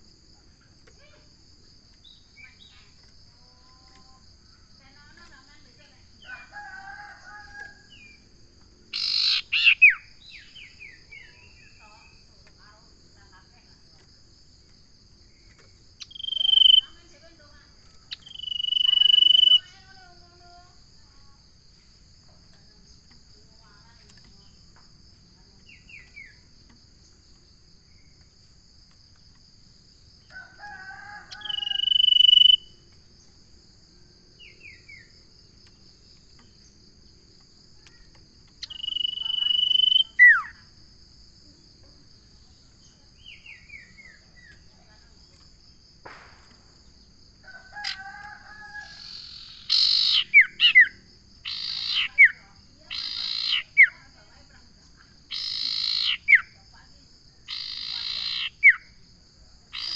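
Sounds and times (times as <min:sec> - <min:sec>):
high insect drone: 0:00.0 - 0:59.9
bird calling with whistles: 0:09.0 - 0:11.5, 0:16.0 - 0:16.9, 0:18.1 - 0:19.7, 0:31.4 - 0:32.7, 0:38.6 - 0:40.6, 0:48.9 - 0:53.8.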